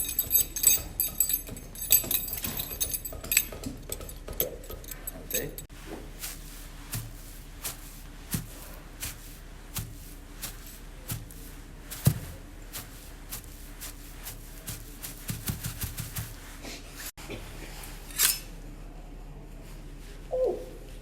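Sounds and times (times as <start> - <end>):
sharp taps with low thud: 12.0 - 12.4.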